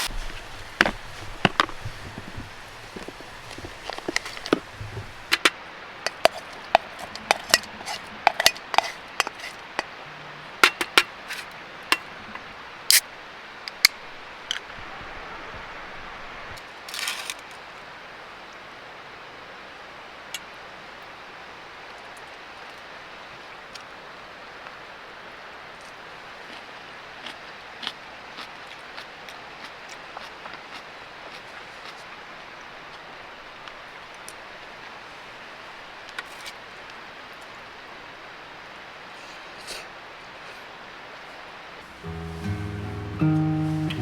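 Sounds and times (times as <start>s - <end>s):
steady background hiss: 0.0s - 44.0s
clinks of small hard objects: 16.9s - 17.4s
brief rustle: 16.9s - 17.6s.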